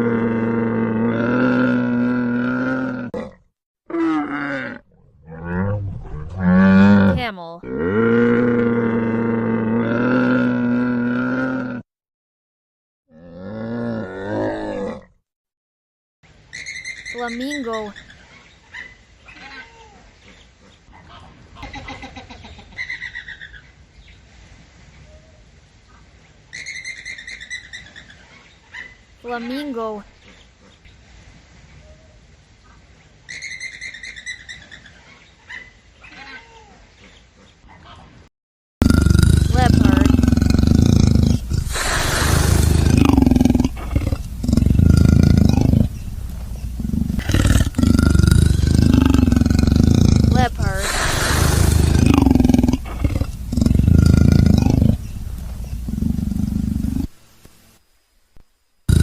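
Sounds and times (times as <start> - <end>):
leopard growling: 3.9 - 9.0, 38.8 - 57.1.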